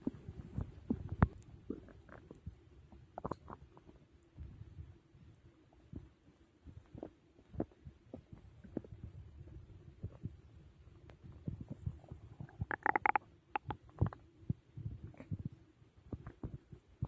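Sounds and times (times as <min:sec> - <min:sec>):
stomach growling: 0:00.0 - 0:04.0, 0:11.3 - 0:16.8.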